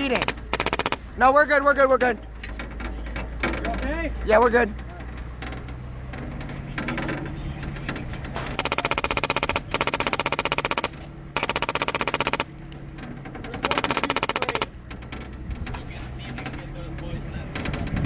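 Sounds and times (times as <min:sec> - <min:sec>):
airsoft gun firing bursts: 0:00.0 - 0:01.1, 0:08.6 - 0:12.5, 0:13.6 - 0:14.8.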